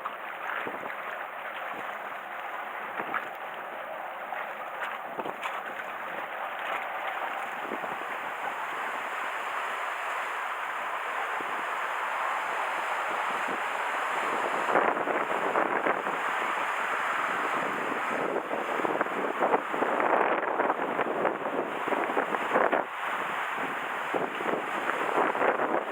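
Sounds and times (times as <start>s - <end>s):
surf washing: 0.0s - 25.9s
wind buffeting microphone: 7.2s - 25.9s.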